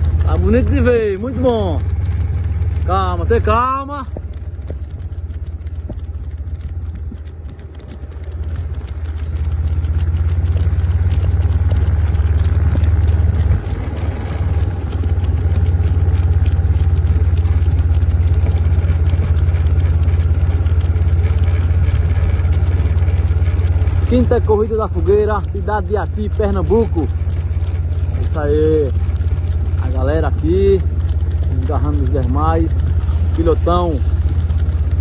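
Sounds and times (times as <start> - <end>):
faint rapid ticks: 0.0 - 35.0
vehicle engine rumbling: 0.0 - 35.0.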